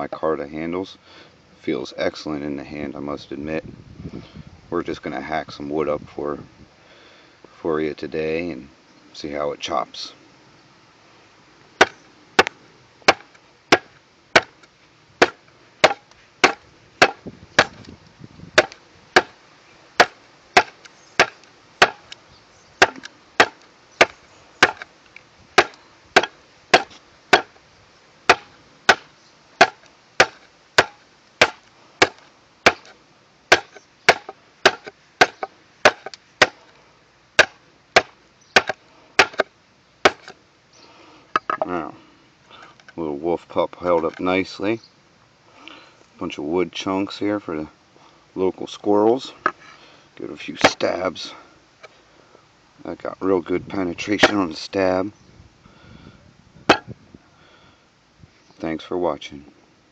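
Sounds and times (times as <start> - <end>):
knife chopping into wood: 13.1 - 14.5, 15.2 - 17.8, 18.6 - 19.3, 20.0 - 22.0, 22.8 - 24.8, 25.6 - 27.5, 28.3 - 32.9, 33.5 - 36.6, 37.4 - 39.5, 40.1 - 40.3.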